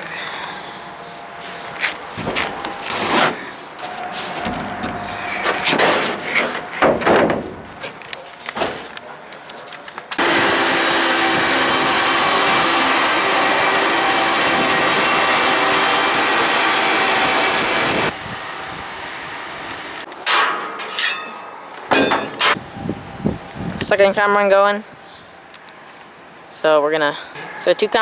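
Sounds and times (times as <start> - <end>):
combine harvester running: 0.0 - 9.2, 10.0 - 22.7
knocks and rustling: 1.4 - 10.2, 20.1 - 22.6.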